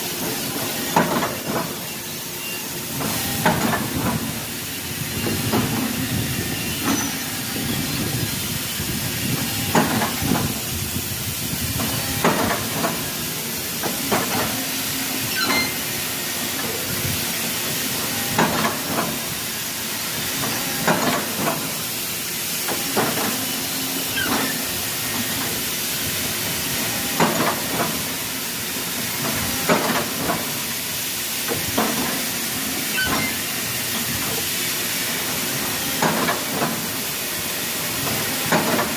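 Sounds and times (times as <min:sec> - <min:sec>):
machinery hiss: 0:00.0 - 0:38.9
sharp mechanical knocks: 0:11.8 - 0:13.1.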